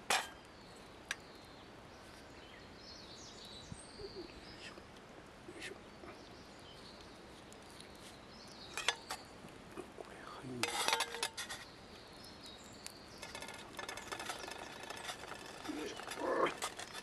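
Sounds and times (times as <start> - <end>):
metal cookware clattering: 0.0 - 0.4, 10.6 - 11.6.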